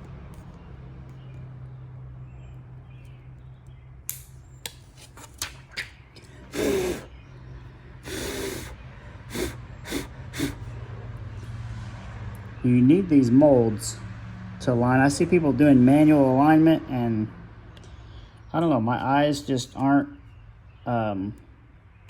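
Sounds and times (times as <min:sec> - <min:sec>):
short puffs of blown air: 0:06.3 - 0:07.2, 0:07.8 - 0:10.9.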